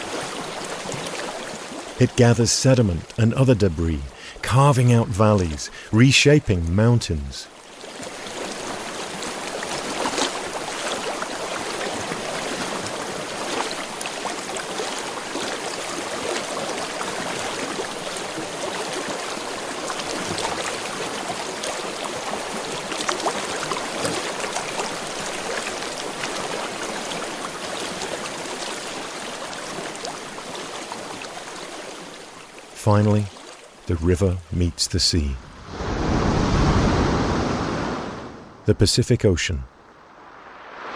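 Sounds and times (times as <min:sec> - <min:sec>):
river water rushing: 0:00.0 - 0:02.0, 0:07.5 - 0:33.9
water splashes: 0:00.0 - 0:34.5.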